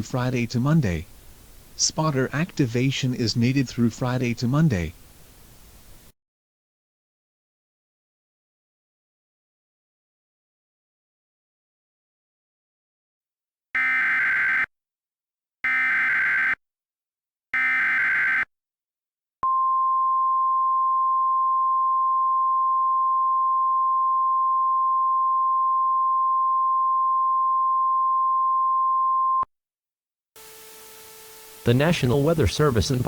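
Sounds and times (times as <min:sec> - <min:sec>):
steady high-pitched alarm tone: 0:17.6 - 0:18.5.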